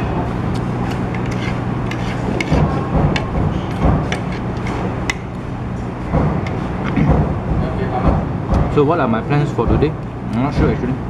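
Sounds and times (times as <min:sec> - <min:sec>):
steady low hum: 0:00.0 - 0:11.0
utensils clicking on bowls: 0:00.5 - 0:05.4.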